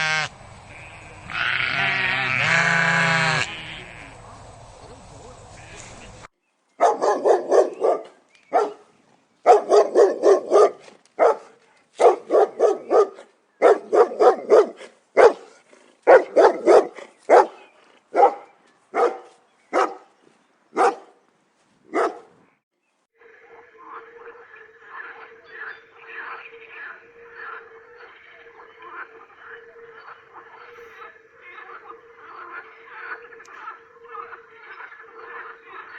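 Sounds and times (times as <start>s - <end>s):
dog barking: 6.8s - 20.1s, 20.8s - 21.2s, 21.9s - 22.3s.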